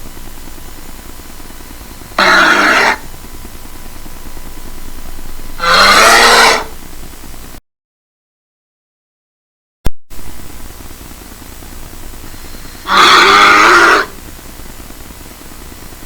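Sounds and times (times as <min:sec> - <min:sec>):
bear roaring: 0:02.2 - 0:03.0, 0:05.6 - 0:06.7, 0:12.8 - 0:14.1.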